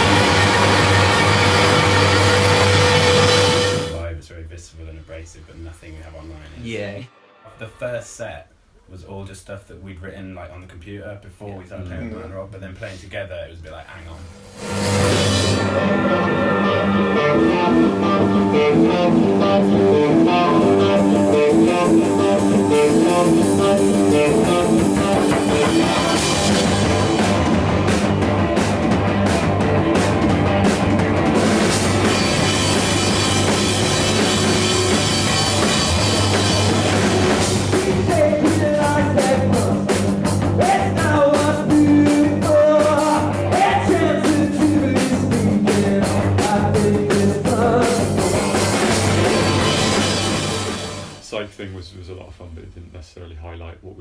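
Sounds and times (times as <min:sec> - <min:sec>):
electric guitar figure: 0:00.0 - 0:04.0, 0:14.0 - 0:40.6, 0:47.3 - 0:51.2
drum kit: 0:00.0 - 0:04.1, 0:13.8 - 0:51.4
person singing: 0:15.6 - 0:26.4, 0:37.6 - 0:48.5.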